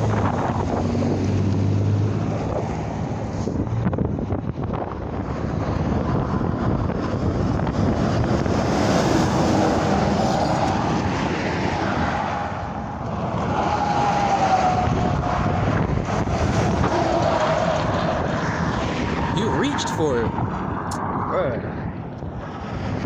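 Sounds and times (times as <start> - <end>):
highway traffic rushing past: 0.0 - 23.0
wind buffeting microphone: 0.0 - 23.0.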